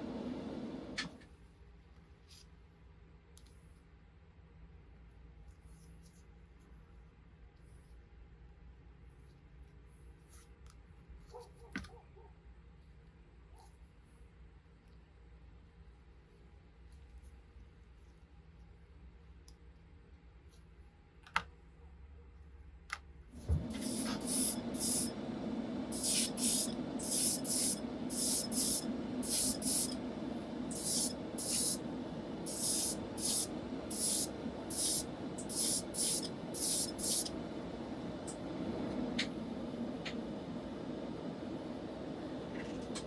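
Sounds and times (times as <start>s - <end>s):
air compressor humming: 0.0s - 1.1s, 23.4s - 43.0s
spray gun hissing bursts: 23.4s - 42.4s.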